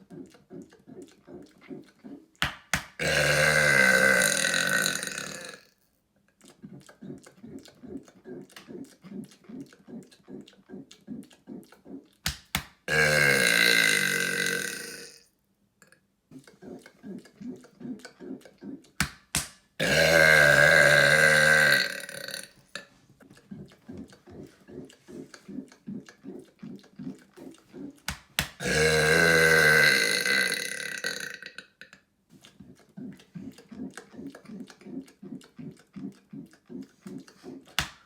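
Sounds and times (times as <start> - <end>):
man burping loudly: 3.0 - 5.7, 12.9 - 15.2, 19.8 - 22.8, 28.6 - 31.8.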